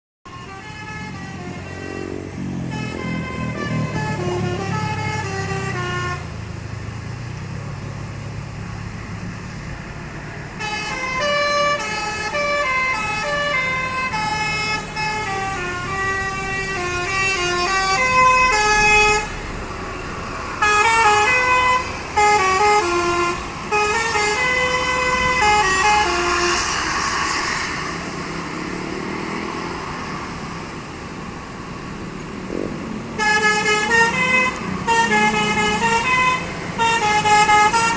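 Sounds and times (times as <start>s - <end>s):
musical air horn tune: 0.3s - 6.3s, 20.6s - 27.3s, 33.2s - 37.9s.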